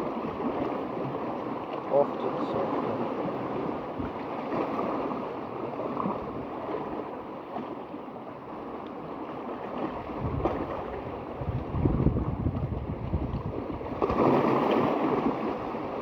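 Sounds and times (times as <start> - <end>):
sea waves washing on shore: 0.0 - 16.0
wind buffeting microphone: 9.9 - 16.0.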